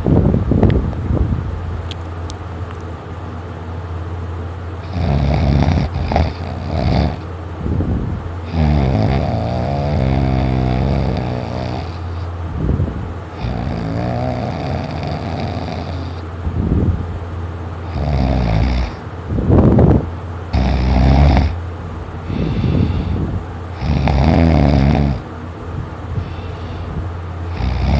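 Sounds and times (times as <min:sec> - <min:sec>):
steady low hum: 0:00.0 - 0:27.9
heavy snoring: 0:04.8 - 0:07.3, 0:08.4 - 0:12.3, 0:13.3 - 0:16.3, 0:17.8 - 0:19.1, 0:20.5 - 0:21.6, 0:22.2 - 0:25.2, 0:26.2 - 0:27.9.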